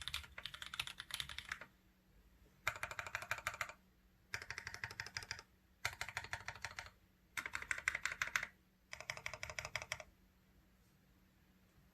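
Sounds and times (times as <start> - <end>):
fast typing on mechanical keyboard: 0.0 - 1.7, 2.6 - 10.1.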